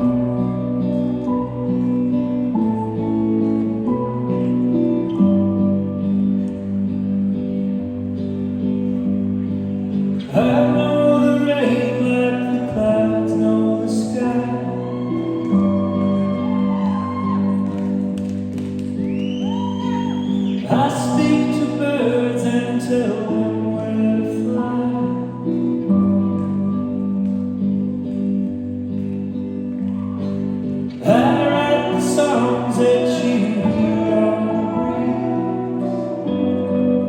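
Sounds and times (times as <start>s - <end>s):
person singing lead vocal: 10.2s - 17.7s, 20.3s - 26.7s, 30.9s - 37.0s.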